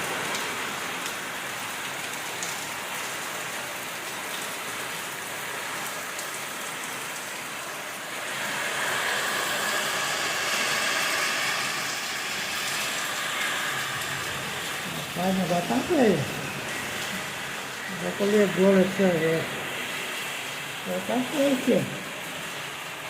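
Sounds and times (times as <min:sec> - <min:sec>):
heavy rain falling: 0:00.0 - 0:23.0.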